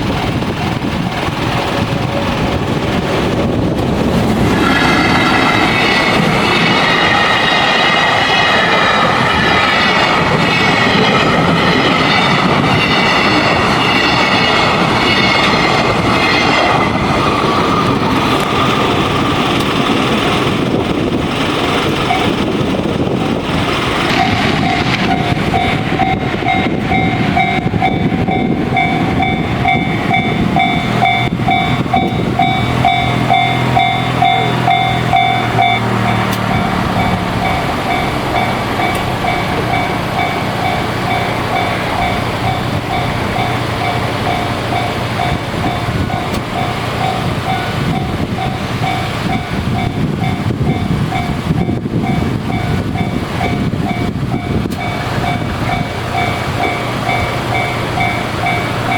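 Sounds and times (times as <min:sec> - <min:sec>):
train wagons clattering: 0:00.0 - 0:58.9
high falling whine: 0:02.4 - 0:51.3
level crossing alarm ringing: 0:04.3 - 0:17.3, 0:22.0 - 0:58.9.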